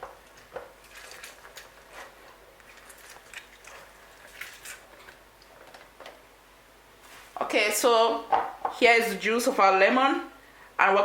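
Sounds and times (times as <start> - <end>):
lemon squishing: 0.7 - 5.8.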